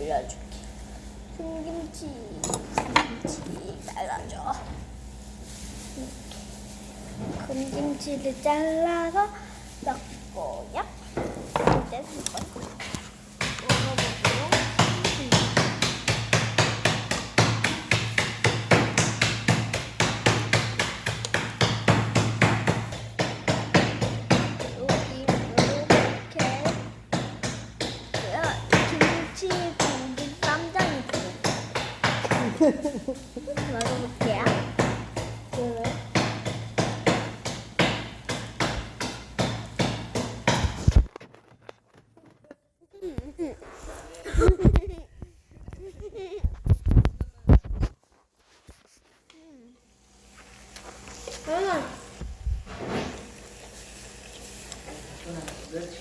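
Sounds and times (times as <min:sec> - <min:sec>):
steady low hum: 0:00.0 - 0:41.1.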